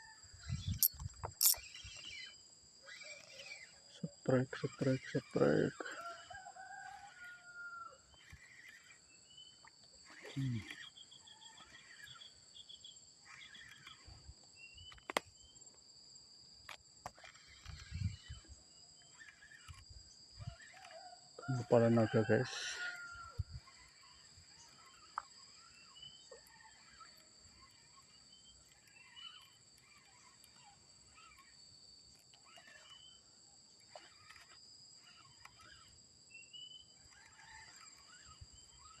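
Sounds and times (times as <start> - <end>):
insect chorus: 0.0 - 39.0
short chirping animal calls: 0.4 - 4.2, 17.2 - 33.3
short chirping calls: 0.4 - 5.7
sharp click: 0.7 - 1.7.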